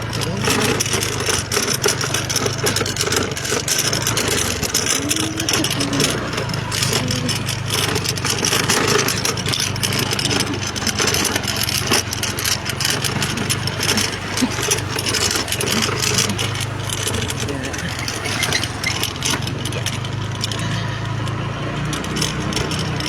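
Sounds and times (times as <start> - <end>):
road and wind noise: 0.0 - 23.0
vehicle engine hum: 0.0 - 23.0.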